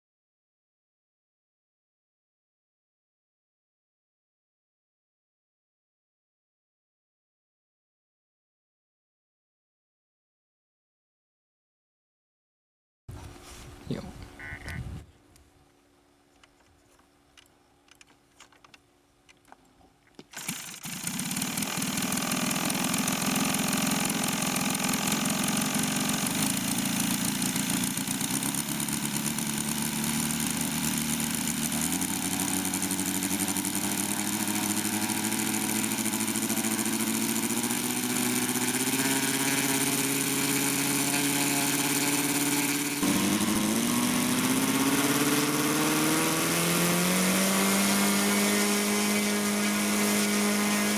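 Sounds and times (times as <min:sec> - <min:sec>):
light clicks: 0:16.3 - 0:20.4
model plane engine running: 0:20.2 - 0:50.9.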